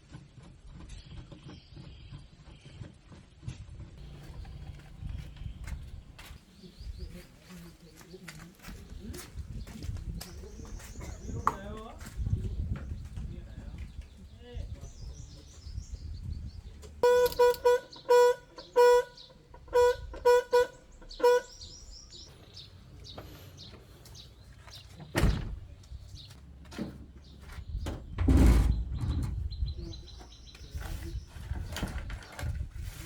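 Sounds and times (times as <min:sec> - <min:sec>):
birds chirping: 0:04.0 - 0:33.0
vehicle horn honks: 0:17.0 - 0:22.3
thud: 0:25.1 - 0:25.7, 0:27.9 - 0:29.3.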